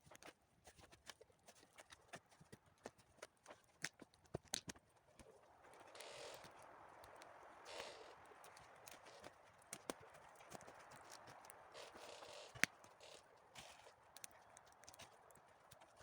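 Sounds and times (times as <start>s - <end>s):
campfire crackling: 4.3s - 16.0s.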